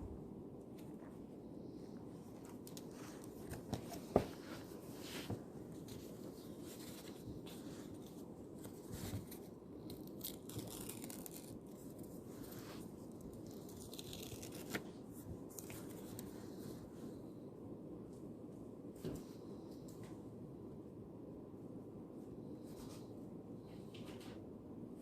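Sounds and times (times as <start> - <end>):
room hum: 0.0 - 25.0
small handling noises: 0.6 - 17.2
paper rustling: 2.3 - 16.6.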